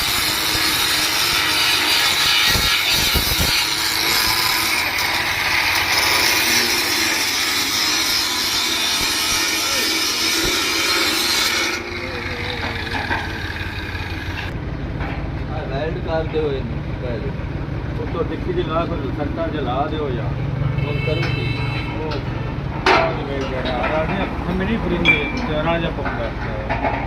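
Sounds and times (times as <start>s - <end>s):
welding arc hissing: 0.0s - 14.5s.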